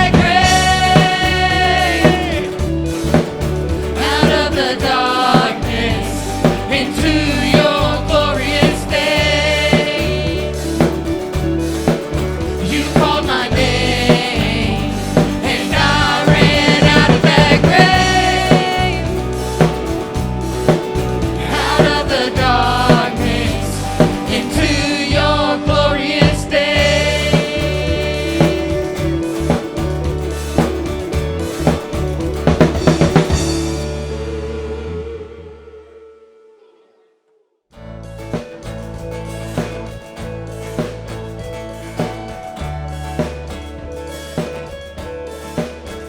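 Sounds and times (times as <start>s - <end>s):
drum kit beat: 0.0s - 35.0s, 38.1s - 46.0s
melodic lead line: 0.0s - 35.6s
band playing worship song: 0.0s - 35.8s, 38.2s - 46.0s.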